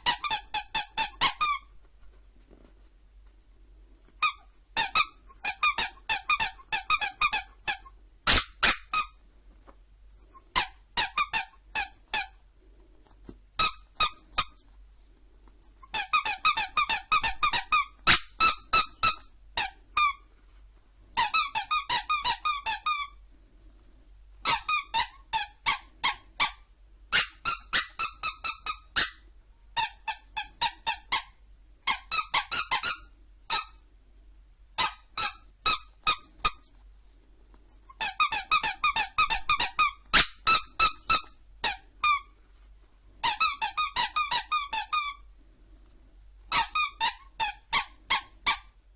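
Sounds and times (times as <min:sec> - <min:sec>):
squeaky dog toy squeaking: 0:00.0 - 0:01.8, 0:04.1 - 0:09.2, 0:10.2 - 0:12.4, 0:13.6 - 0:14.6, 0:15.6 - 0:20.3, 0:21.2 - 0:23.2, 0:24.4 - 0:29.2, 0:29.8 - 0:33.8, 0:34.7 - 0:36.7, 0:37.8 - 0:42.4, 0:43.2 - 0:45.3, 0:46.5 - 0:48.8.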